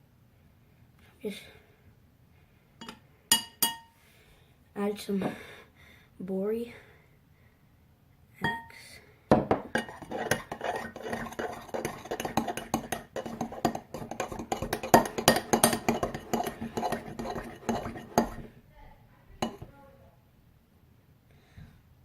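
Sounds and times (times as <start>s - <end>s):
spoon clinking and scraping bowl: 9.7s - 18.5s, 19.4s - 19.7s.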